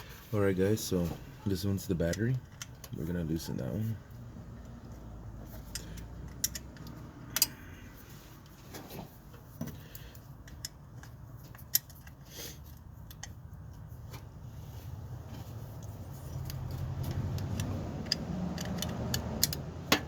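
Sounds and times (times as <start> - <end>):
wrench clicking on metal: 5.7 - 7.6, 16.4 - 19.7.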